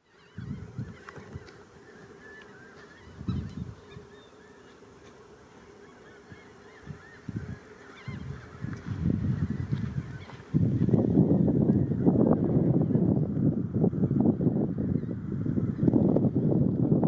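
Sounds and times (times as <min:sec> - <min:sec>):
birds chirping: 0:00.0 - 0:13.2.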